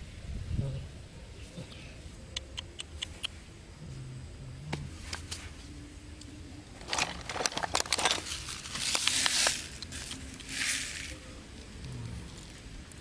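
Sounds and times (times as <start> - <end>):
rustling and crackling: 6.7 - 13.0.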